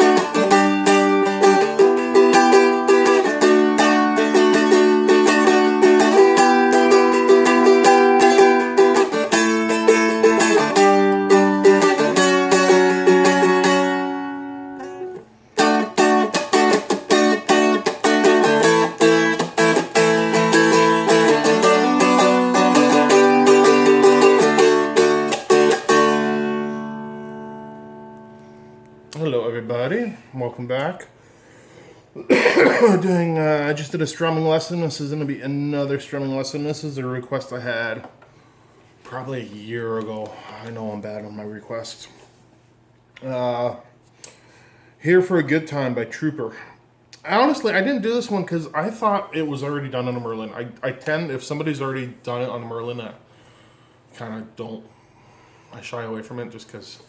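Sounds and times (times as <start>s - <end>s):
strummed dulcimer chords: 0.0s - 28.1s.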